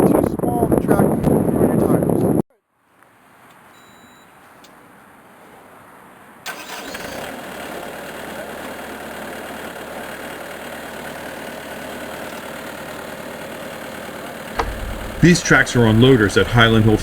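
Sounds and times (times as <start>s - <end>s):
loader engine running: 10.6s - 17.0s
faint hiss: 14.6s - 17.0s.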